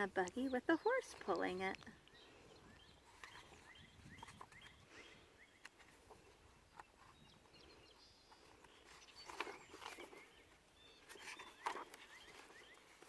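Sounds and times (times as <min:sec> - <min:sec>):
brief rustle: 0:08.3 - 0:13.0.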